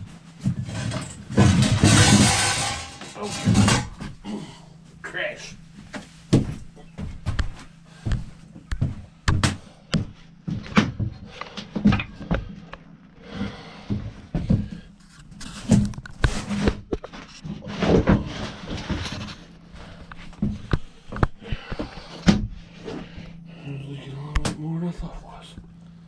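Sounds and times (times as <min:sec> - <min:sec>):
steady low hum: 0:00.0 - 0:26.0
hand tools clinking on metal parts: 0:00.7 - 0:03.9.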